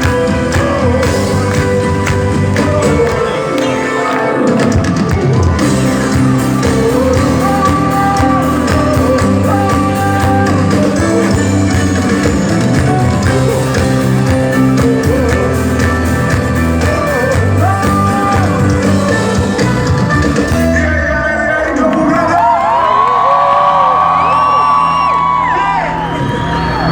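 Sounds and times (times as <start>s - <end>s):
person singing: 0.0s - 22.5s
loud rock music: 0.0s - 23.0s.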